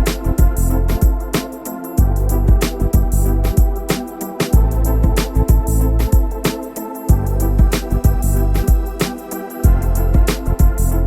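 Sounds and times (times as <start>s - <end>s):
background music with beat: 0.0s - 11.0s.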